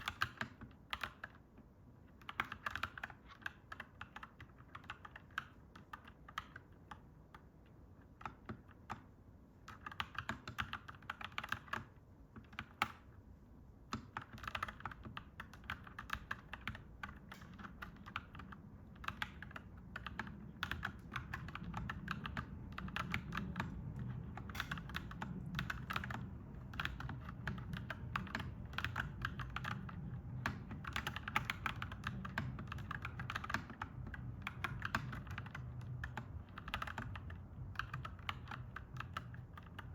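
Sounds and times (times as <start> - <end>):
typing on mechanical keyboard: 0.0 - 13.2, 13.8 - 39.9.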